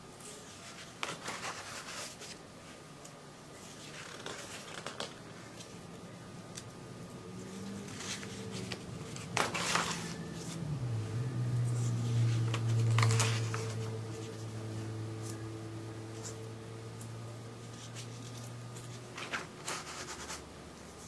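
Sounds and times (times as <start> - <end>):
steady low hum: 0.0 - 21.0
paper pages rustling: 0.2 - 2.8, 3.5 - 5.9, 7.4 - 10.7, 11.7 - 14.6, 17.6 - 21.0.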